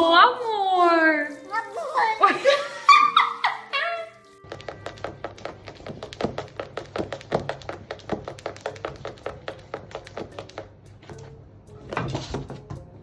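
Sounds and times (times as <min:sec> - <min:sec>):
music with clicking percussive beat: 0:04.4 - 0:11.1.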